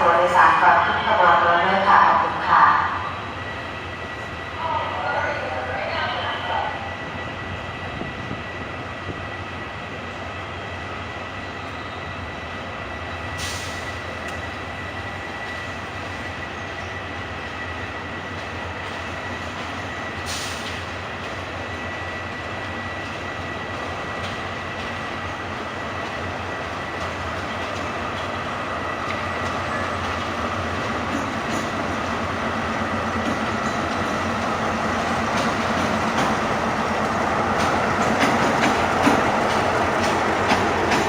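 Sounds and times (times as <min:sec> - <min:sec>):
diesel train rumble: 0:00.0 - 0:41.0
brief hissing: 0:13.4 - 0:14.0.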